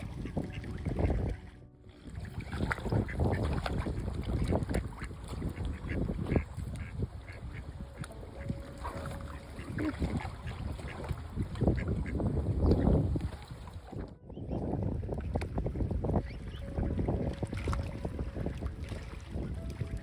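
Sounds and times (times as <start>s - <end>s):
ducks quacking: 0.0s - 1.6s, 2.6s - 13.6s
wind rumbling on microphone: 0.0s - 20.0s.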